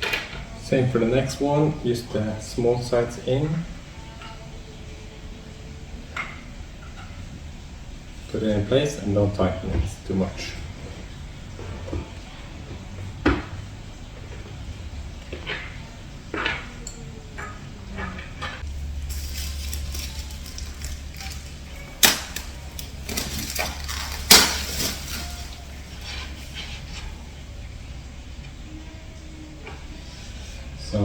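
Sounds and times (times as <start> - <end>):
low steady hum: 0.0 - 31.0
clicks and knocks of wooden parts: 16.3 - 26.7.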